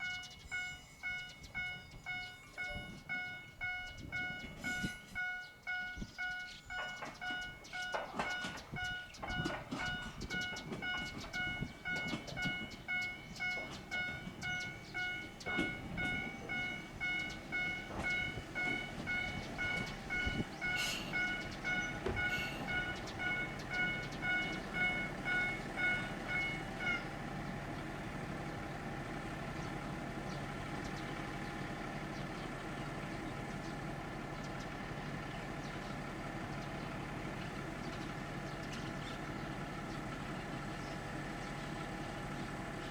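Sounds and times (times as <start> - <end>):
level crossing bell dinging: 0.0 - 27.0
diesel railcar engine idling: 0.0 - 42.9
train clicks and knocks: 0.0 - 42.9.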